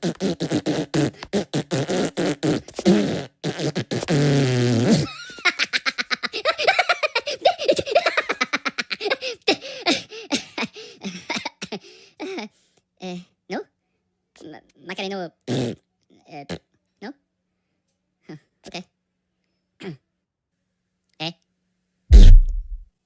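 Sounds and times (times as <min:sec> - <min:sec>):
cartoon fart sounds: 0:00.0 - 0:05.2, 0:15.4 - 0:15.8, 0:22.1 - 0:22.8
high cartoon voices giggling: 0:05.0 - 0:10.8.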